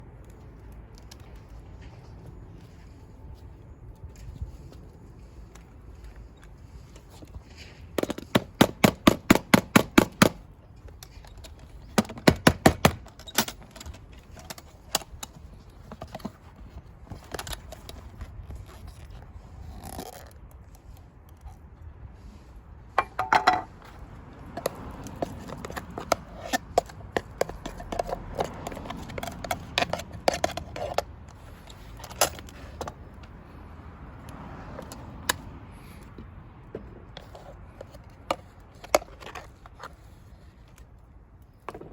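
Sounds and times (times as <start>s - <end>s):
metal tin taps and clanks: 23.0s - 23.7s.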